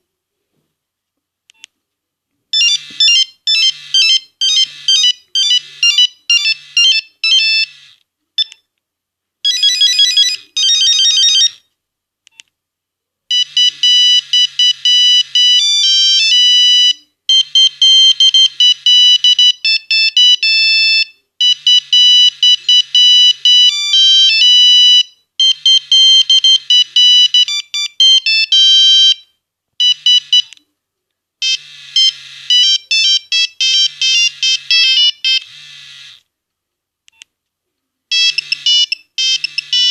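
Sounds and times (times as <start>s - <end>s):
mobile phone ringtone beeping melody: 2.6s - 8.5s, 9.5s - 11.6s, 13.3s - 30.5s, 31.4s - 36.2s, 38.1s - 39.9s.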